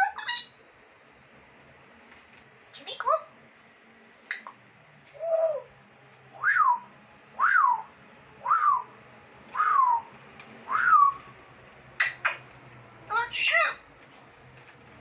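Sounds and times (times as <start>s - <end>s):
parrot whistled calls: 5.2s - 5.7s, 6.4s - 11.3s.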